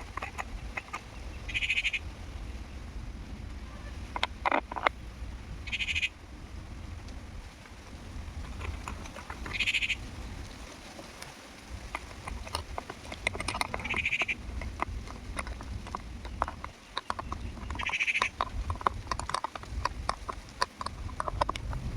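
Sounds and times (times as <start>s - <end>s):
small clicks: 0.0s - 1.1s, 11.1s - 21.9s
pulsed animal calls: 0.0s - 2.1s, 5.6s - 6.2s, 8.4s - 10.1s, 11.9s - 19.7s
low rumble: 20.9s - 21.9s.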